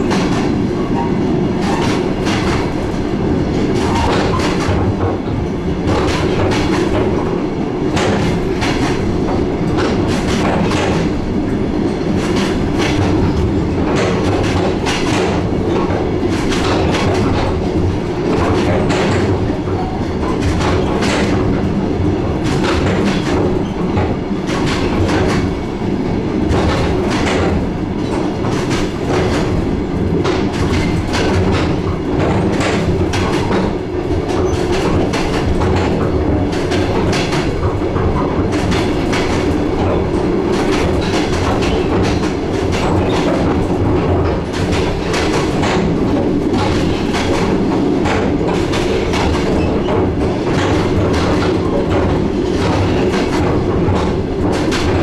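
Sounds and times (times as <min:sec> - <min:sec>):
train rumbling: 0:00.0 - 0:55.0.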